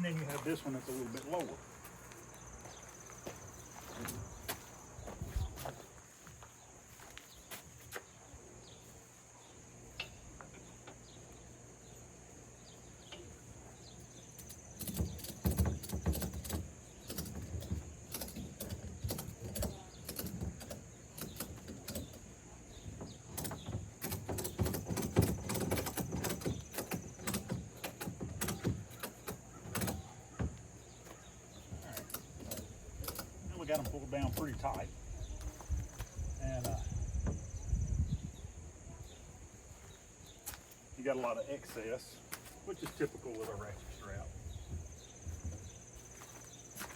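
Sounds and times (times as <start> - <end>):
ratchet strap clicking: 14.4 - 22.2, 23.4 - 30.1, 31.8 - 34.8.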